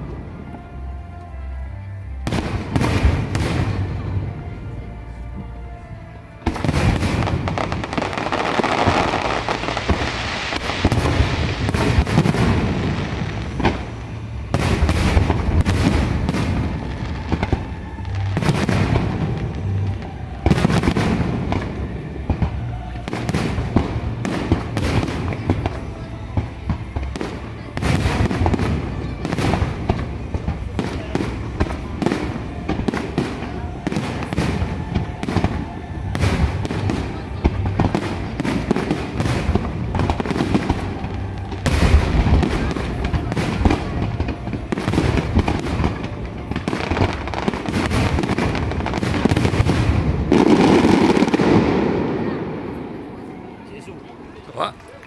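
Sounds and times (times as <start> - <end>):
fireworks bursts and booms: 0.0 - 55.0
music playing: 0.0 - 55.0
crackling firework shells: 6.4 - 53.3.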